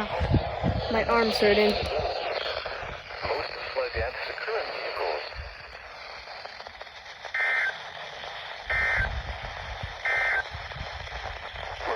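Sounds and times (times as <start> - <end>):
buzzing digital bursts: 0.0 - 4.0
radio hiss: 0.0 - 11.9.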